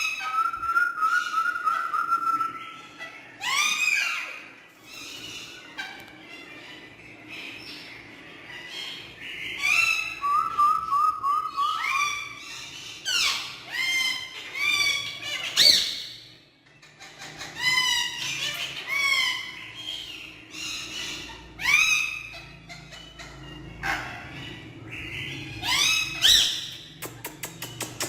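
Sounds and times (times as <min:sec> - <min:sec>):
parrot squawking and whistling: 0:00.0 - 0:04.5, 0:08.6 - 0:16.2, 0:17.6 - 0:27.2.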